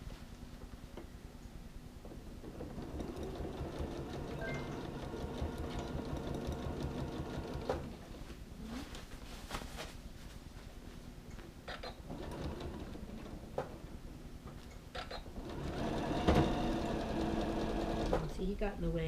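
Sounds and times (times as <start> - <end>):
sewing machine stitching: 2.4 - 8.0, 11.8 - 13.5, 15.0 - 18.3.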